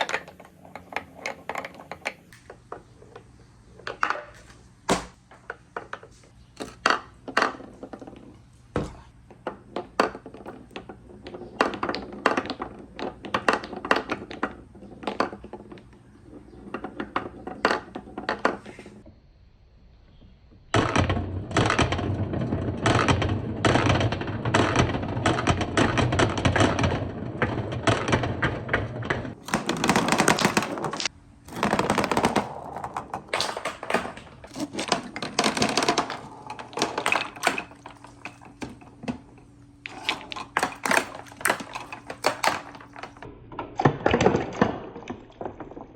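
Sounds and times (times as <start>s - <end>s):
marbles rattling down wooden ramps: 0.0s - 2.3s, 20.8s - 43.3s.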